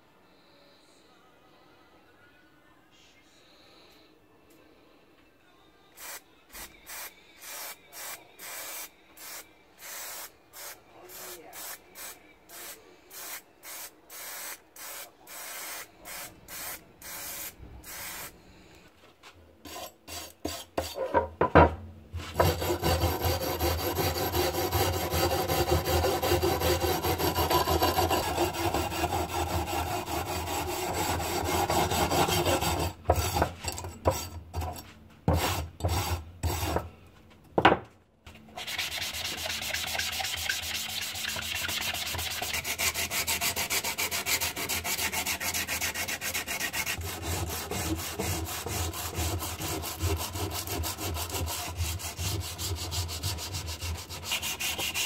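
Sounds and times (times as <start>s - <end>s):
scrubbing strokes on metal: 22.2s - 36.8s, 38.6s - 55.0s.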